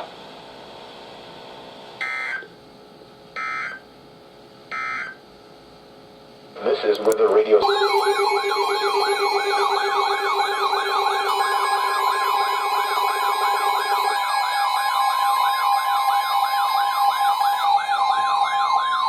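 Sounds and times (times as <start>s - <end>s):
steady high alert tones: 7.6s - 19.0s
sweeping siren-like tone: 7.6s - 19.0s.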